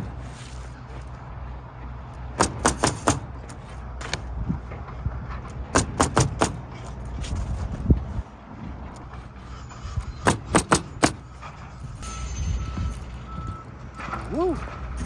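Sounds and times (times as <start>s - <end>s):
steady low rumble: 0.0s - 15.0s
pneumatic nailer shots: 2.4s - 4.2s, 5.7s - 7.4s, 10.0s - 11.4s.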